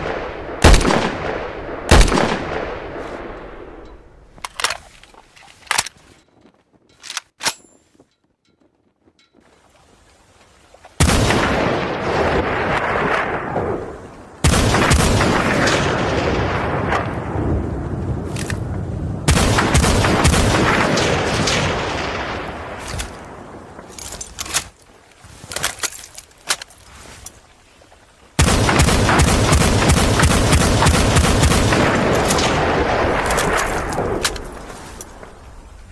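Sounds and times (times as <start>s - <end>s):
rifle shots with rolling echo: 0.0s - 4.7s, 11.0s - 17.4s, 19.3s - 23.4s, 28.4s - 34.6s.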